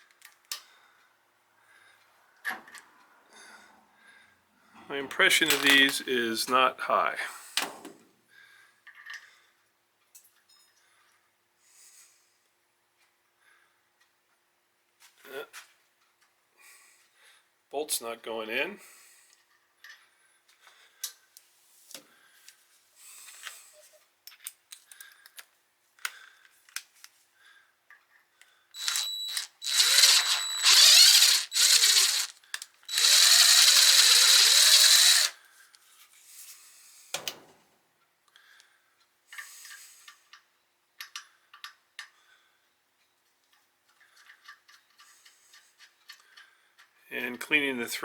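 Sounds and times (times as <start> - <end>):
cordless drill whining: 28.8 - 35.4.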